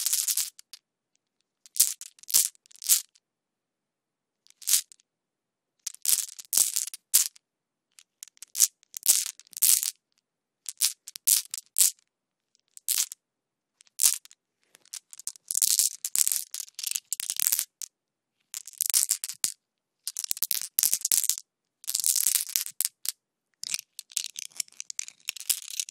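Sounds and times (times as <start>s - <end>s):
glass marbles clicking and rattling: 0.0s - 0.7s, 1.7s - 3.1s, 13.9s - 17.9s, 18.6s - 25.9s.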